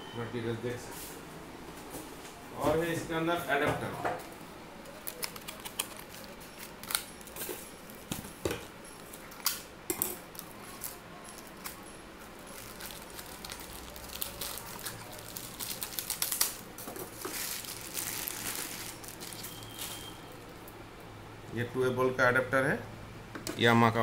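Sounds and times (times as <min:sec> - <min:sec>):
packaging handling clicks: 0:04.9 - 0:07.4.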